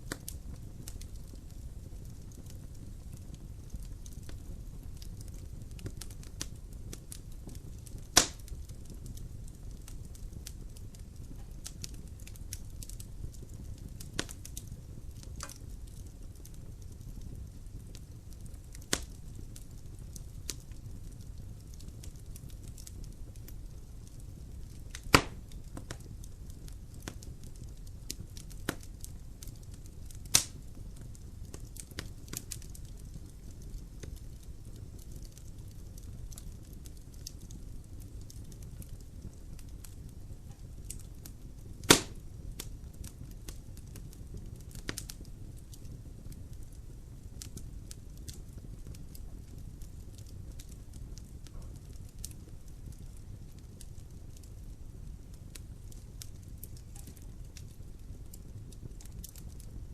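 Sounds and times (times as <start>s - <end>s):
fire crackling and popping: 0.0s - 59.9s
fire flames rumbling: 0.0s - 59.9s.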